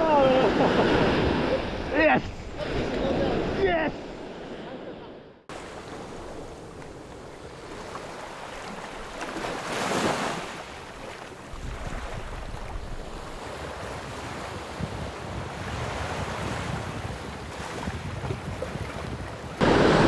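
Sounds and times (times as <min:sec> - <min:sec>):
surf washing on beach: 0:00.0 - 0:20.0
wind buffeting microphone: 0:11.5 - 0:20.0.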